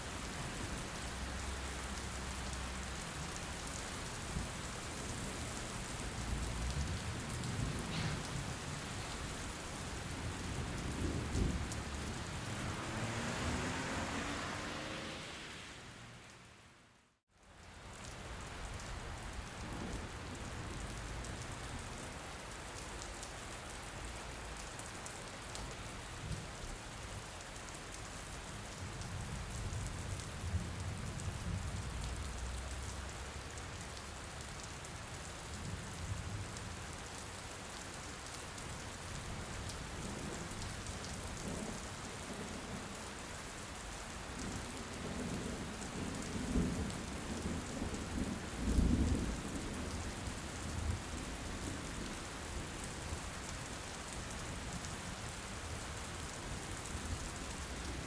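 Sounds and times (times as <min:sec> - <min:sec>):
heavy rain: 0:00.0 - 0:58.0
thunder rumbles: 0:06.1 - 0:13.9, 0:44.4 - 0:50.2.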